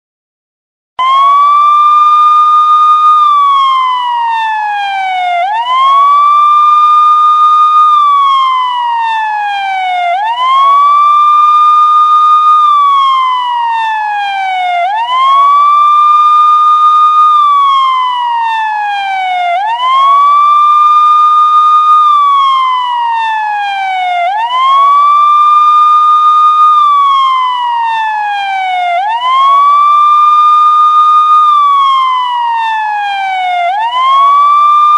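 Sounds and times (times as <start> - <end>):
police siren wailing: 1.0 - 34.9.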